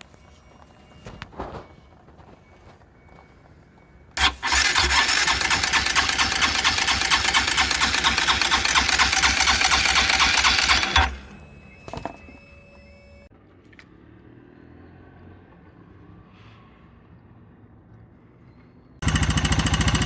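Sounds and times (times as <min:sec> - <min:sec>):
motorcycle engine running: 0:04.2 - 0:11.4, 0:19.0 - 0:20.0
engine clicking: 0:04.2 - 0:11.6, 0:19.0 - 0:20.0.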